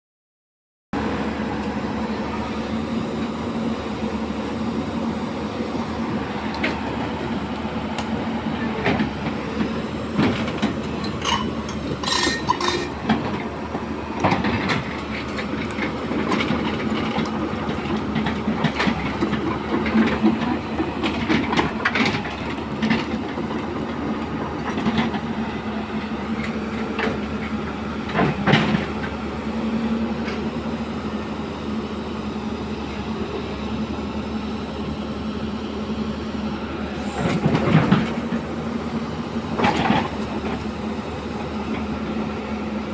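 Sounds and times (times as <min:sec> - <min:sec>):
excavator diesel engine running: 0:01.0 - 0:42.9
excavator clanks and knocks: 0:06.1 - 0:31.2, 0:36.6 - 0:42.9.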